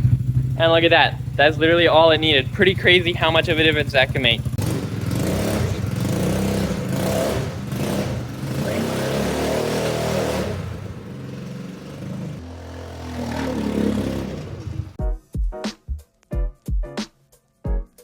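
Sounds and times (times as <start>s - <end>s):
small engine revving: 1.4s - 15.0s.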